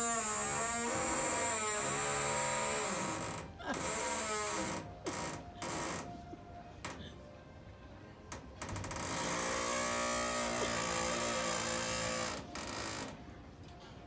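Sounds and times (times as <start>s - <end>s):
alarm buzzing harshly: 9.1s - 13.1s.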